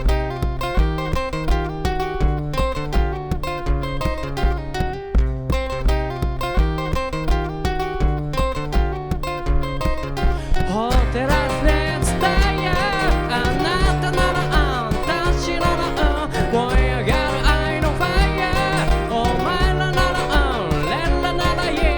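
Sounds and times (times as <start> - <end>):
bass notes: 0.0 - 21.9
low thumping beat: 0.0 - 21.9
strummed acoustic guitar: 0.0 - 21.9
person singing: 10.5 - 21.9.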